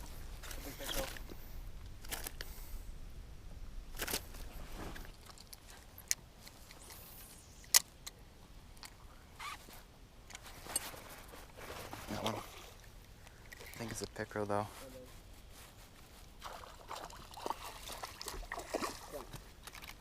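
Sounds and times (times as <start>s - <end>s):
rustling: 3.9s - 7.8s, 9.4s - 12.8s, 14.6s - 16.6s.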